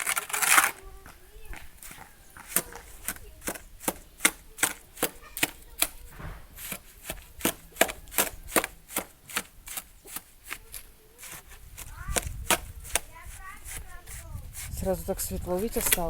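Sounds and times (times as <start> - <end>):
hammer blows on wood: 2.4 - 14.8.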